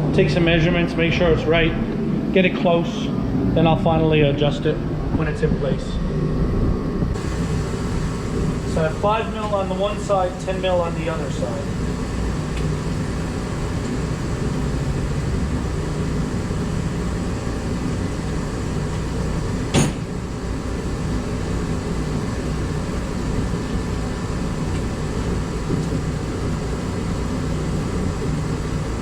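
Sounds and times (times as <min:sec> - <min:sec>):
fan humming: 0:00.0 - 0:29.0
sharp knock: 0:19.7 - 0:20.0.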